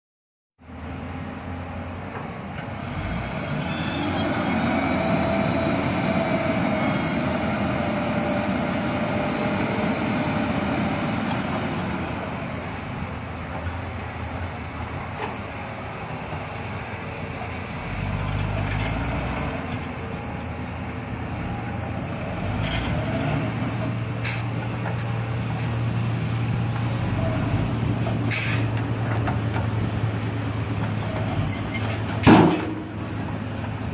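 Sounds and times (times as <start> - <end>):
diesel machinery running: 0.6 - 33.9
sharp metallic clanks: 31.8 - 33.9.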